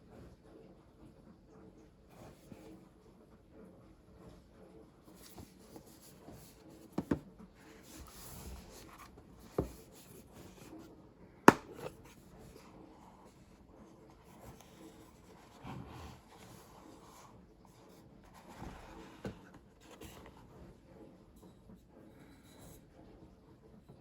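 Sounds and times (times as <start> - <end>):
box rubbing and scraping: 5.2 - 10.8, 11.5 - 20.5
sharp knocks on box: 11.5 - 12.0.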